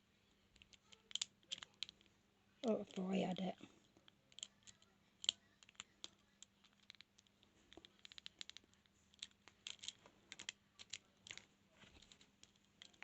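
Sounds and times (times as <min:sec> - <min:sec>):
lock pick clicking and scratching: 0:00.5 - 0:02.0, 0:04.3 - 0:11.4.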